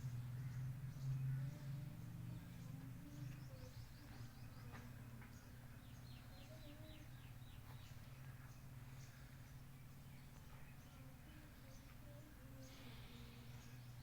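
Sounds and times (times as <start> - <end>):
faint bird chirps: 0.0 - 14.0
steady low hum: 0.0 - 14.0.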